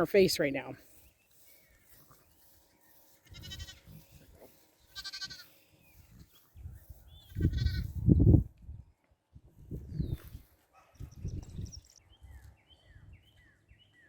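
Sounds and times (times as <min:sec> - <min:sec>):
lamb bleating: 0:03.2 - 0:04.0, 0:04.9 - 0:05.5, 0:07.3 - 0:07.9.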